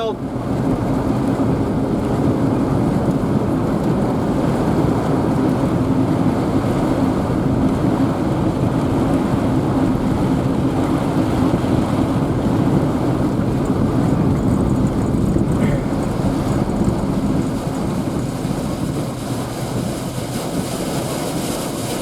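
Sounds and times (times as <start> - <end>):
low vehicle hum: 0.0 - 22.0
storm wind buffeting microphone: 0.0 - 22.0.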